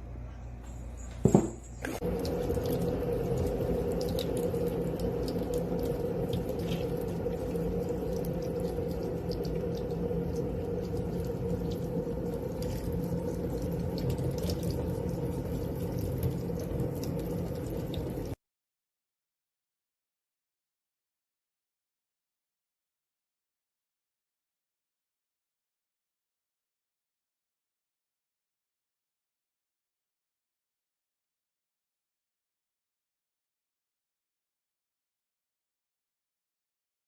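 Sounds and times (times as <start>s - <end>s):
running water: 1.2s - 18.4s
small clicks and splashes: 1.8s - 18.4s.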